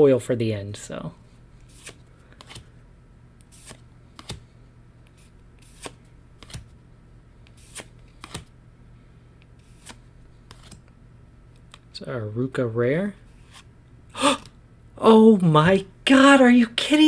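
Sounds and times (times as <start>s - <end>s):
low steady hum: 0.0s - 17.0s
trading cards clicking: 1.7s - 2.7s, 3.4s - 4.4s, 5.1s - 6.7s, 7.5s - 8.5s, 9.6s - 10.9s.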